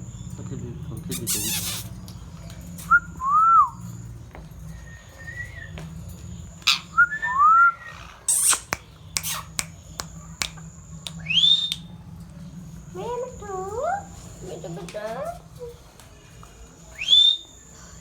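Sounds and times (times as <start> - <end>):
harsh parakeet chirps: 1.0 - 2.0, 6.6 - 11.9
parakeet whistling: 1.1 - 1.9, 6.6 - 9.7, 11.2 - 11.9, 17.0 - 17.6.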